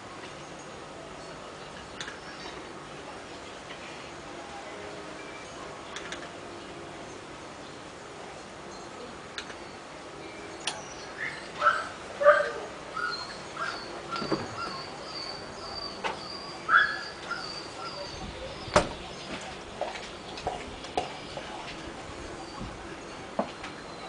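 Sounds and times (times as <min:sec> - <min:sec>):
dog barking: 0:11.6 - 0:12.7.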